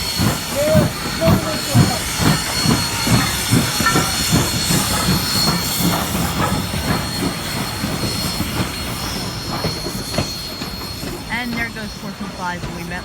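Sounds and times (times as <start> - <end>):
steady steam hiss: 0.0 - 13.0
steam train clatter: 0.0 - 13.0.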